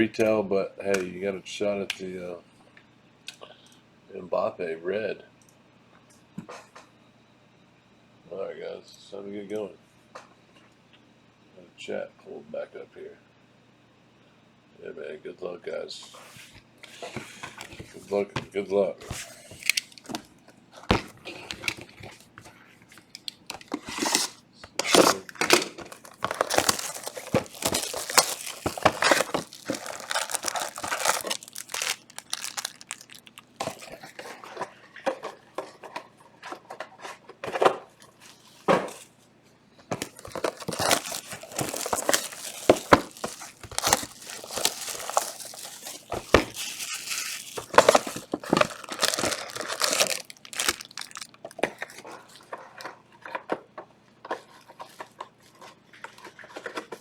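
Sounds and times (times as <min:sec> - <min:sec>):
plastic wrap tearing and crinkling: 0:23.8 - 0:34.3, 0:40.0 - 0:52.0
cardboard handled: 0:25.9 - 0:34.0, 0:39.9 - 0:51.3.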